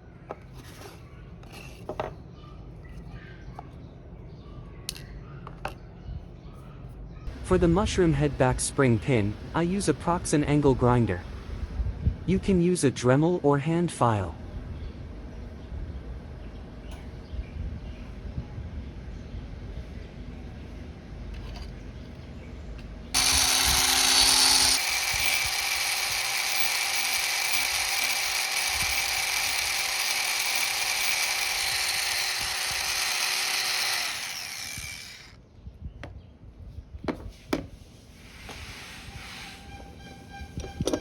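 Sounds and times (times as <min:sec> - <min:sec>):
angle grinder whining: 0:23.2 - 0:35.4.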